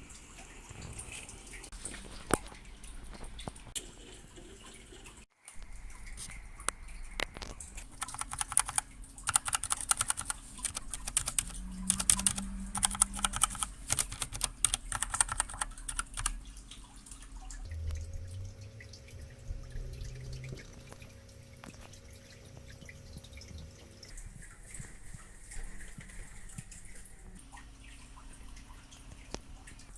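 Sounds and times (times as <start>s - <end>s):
mechanical keyboard typing: 7.2s - 16.4s.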